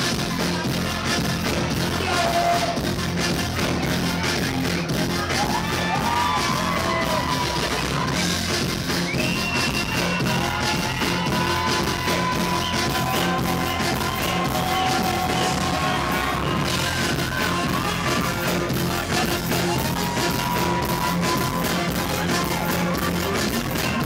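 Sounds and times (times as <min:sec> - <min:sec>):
dancehall music through speakers: 0:00.0 - 0:24.0
person yelling and singing: 0:01.8 - 0:02.8, 0:10.2 - 0:24.0.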